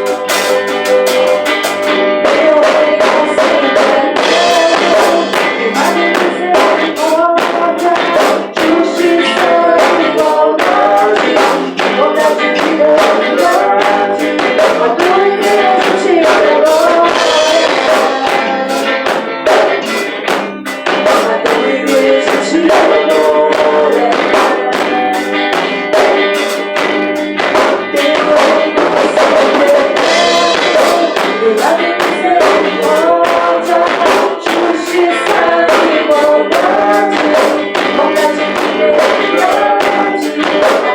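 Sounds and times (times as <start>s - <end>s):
guitar: 0.0s - 40.9s
percussion beat: 0.0s - 40.9s
person singing: 0.0s - 40.9s.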